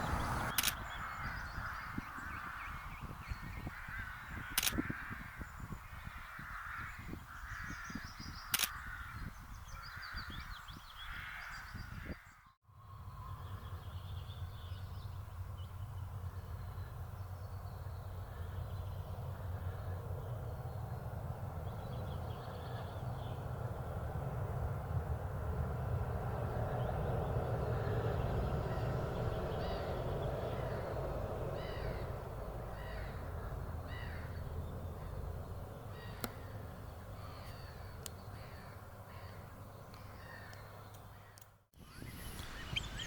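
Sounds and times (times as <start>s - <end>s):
sharp clicks: 0.5s - 0.8s, 4.5s - 4.8s, 8.5s - 8.8s
faint high bird calls: 35.9s - 43.0s.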